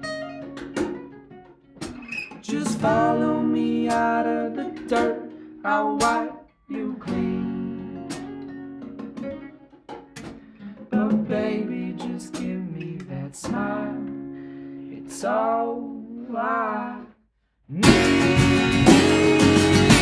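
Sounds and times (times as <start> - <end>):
acoustic guitar playing: 0.0 - 6.4, 7.0 - 15.1, 17.8 - 20.0
wordless singing: 2.4 - 7.4, 17.8 - 20.0.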